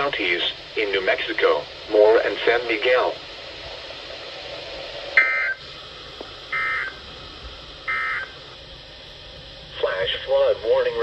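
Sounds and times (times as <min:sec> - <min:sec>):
low hiss: 0:00.0 - 0:11.0
digital data tone bursts: 0:05.2 - 0:05.6, 0:06.5 - 0:07.0, 0:07.9 - 0:08.4.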